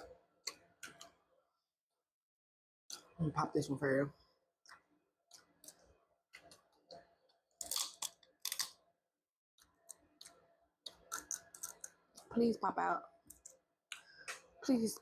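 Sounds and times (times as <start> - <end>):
crab shell cracking: 7.6 - 8.8, 9.9 - 12.0.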